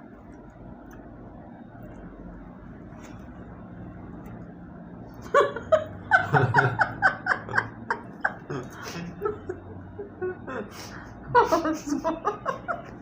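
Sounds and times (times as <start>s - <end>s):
low steady background hum: 0.0s - 13.0s
person laughing hard: 5.3s - 13.0s.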